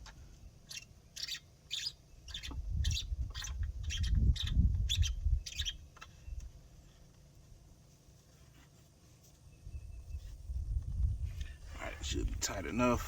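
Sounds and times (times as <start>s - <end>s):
bird chirping: 0.4s - 7.0s, 9.4s - 10.5s.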